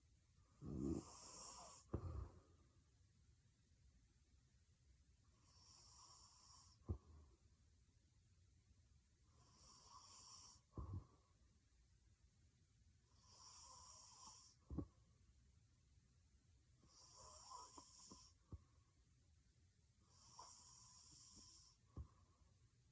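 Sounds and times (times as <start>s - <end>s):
woman snoring with snorts: 0.6s - 2.0s.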